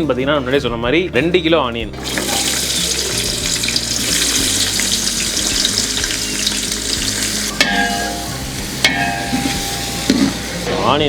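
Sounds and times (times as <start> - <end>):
onions sizzling in a pan: 2.0 - 11.0
sharp metallic knock: 7.6 - 10.3.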